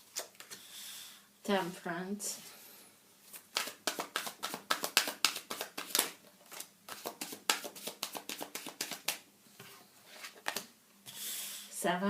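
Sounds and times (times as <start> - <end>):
cards being shuffled: 3.3 - 9.2, 10.2 - 10.7.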